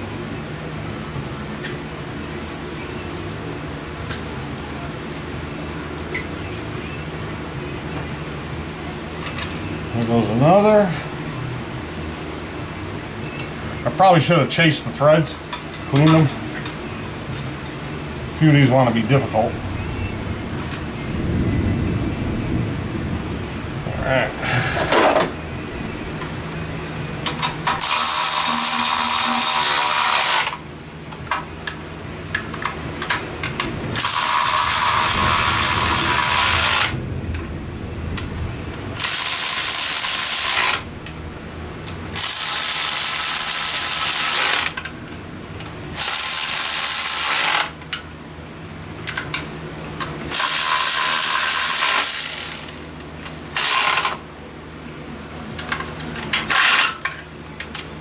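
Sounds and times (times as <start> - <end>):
power tool spinning bolts: 27.3 - 30.6, 34.0 - 37.0, 39.0 - 40.9, 42.2 - 44.9, 46.0 - 47.8, 50.3 - 53.0, 53.6 - 54.2, 56.2 - 57.2.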